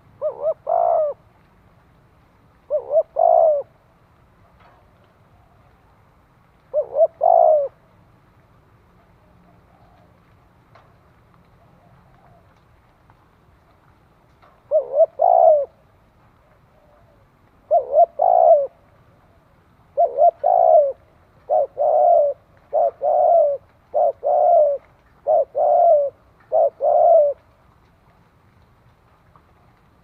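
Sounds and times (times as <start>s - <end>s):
dove cooing: 0.0s - 1.2s, 2.7s - 3.8s, 6.7s - 7.8s, 9.1s - 10.2s, 14.7s - 15.9s, 16.6s - 27.5s.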